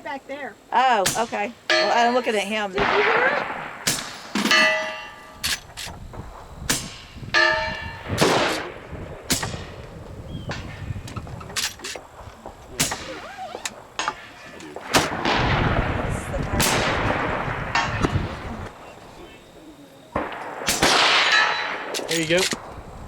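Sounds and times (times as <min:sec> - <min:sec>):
gunshots: 0:01.0 - 0:02.1, 0:02.8 - 0:07.1, 0:07.8 - 0:09.8, 0:12.7 - 0:19.6, 0:20.2 - 0:22.6
steel target ringing: 0:01.0 - 0:05.5, 0:06.7 - 0:08.7, 0:20.3 - 0:22.4.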